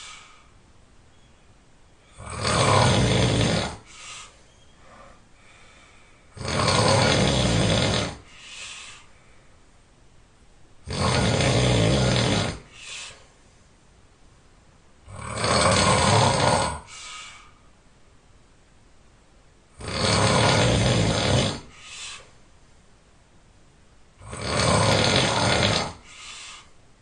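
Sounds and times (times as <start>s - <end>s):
person snoring loudly: 2.1s - 3.9s, 6.3s - 8.3s, 10.8s - 12.8s, 15.1s - 17.0s, 19.8s - 21.8s, 24.2s - 26.1s.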